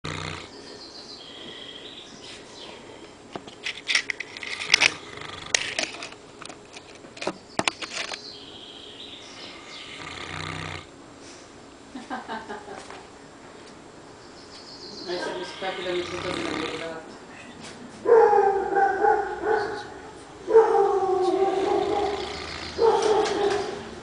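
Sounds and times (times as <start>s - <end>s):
dog snoring: 0.0s - 0.6s, 4.6s - 5.8s, 9.5s - 10.9s, 15.1s - 17.0s, 21.2s - 23.0s.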